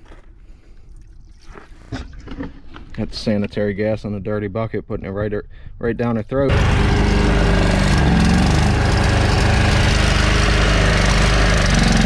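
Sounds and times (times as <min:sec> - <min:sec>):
lawn mower engine running: 0:06.5 - 0:12.0.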